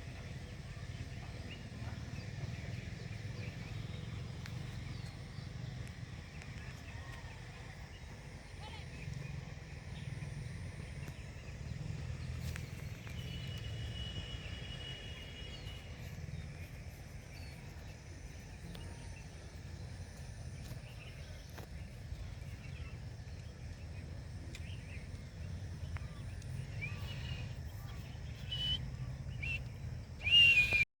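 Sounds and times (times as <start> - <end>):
faint bird chirps: 20.6 - 30.8.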